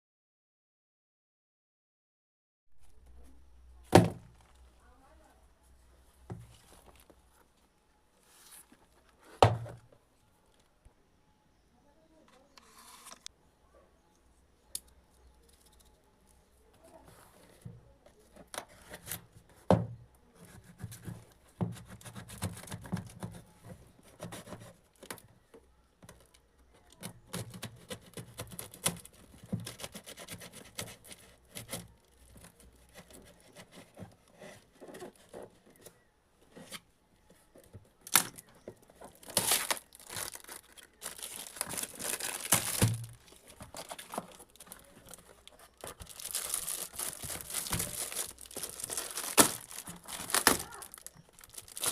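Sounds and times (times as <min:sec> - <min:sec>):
packaging crinkling: 0:38.1 - 0:51.9
packaging tearing: 0:39.2 - 0:51.9.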